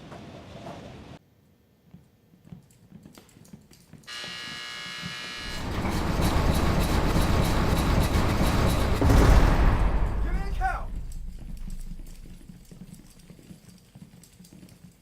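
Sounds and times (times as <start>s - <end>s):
cell-block buzzer: 4.1s - 5.6s
steel cell doors rolling open: 5.4s - 13.2s.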